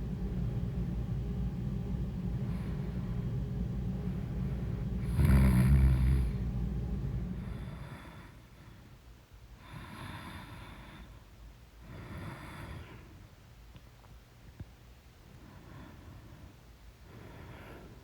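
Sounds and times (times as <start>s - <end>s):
quiet breaths: 2.4s - 3.3s, 7.3s - 18.0s
woman snoring: 5.0s - 6.4s.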